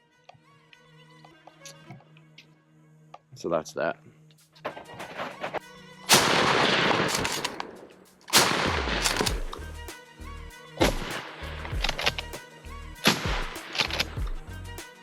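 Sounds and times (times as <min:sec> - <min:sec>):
heavy boom: 0:08.4 - 0:09.5
pulsing bass line: 0:08.7 - 0:14.8.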